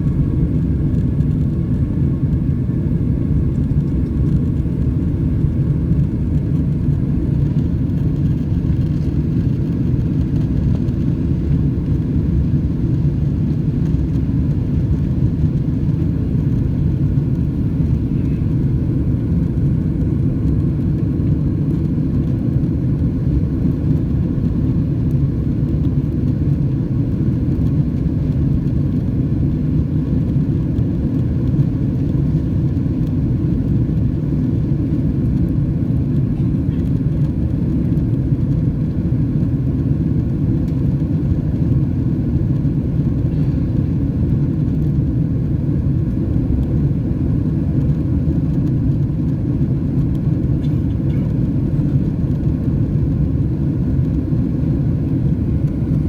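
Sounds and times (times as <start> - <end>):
faint whine: 0.0 - 20.7
jet engines rumbling: 0.0 - 56.0.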